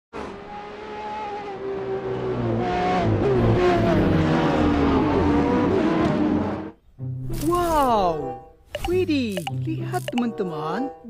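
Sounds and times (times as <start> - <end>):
racing car engines revving: 0.2 - 6.8.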